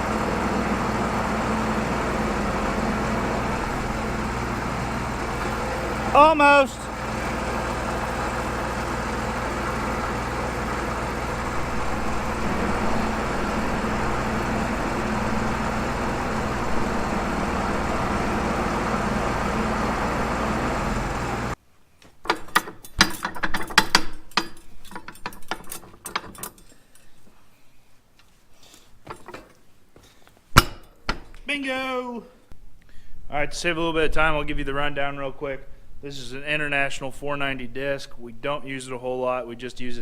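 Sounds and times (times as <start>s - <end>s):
tractor diesel engine running: 0.0s - 21.6s
metal hitch clinks and knocks: 22.2s - 27.2s, 29.0s - 29.6s.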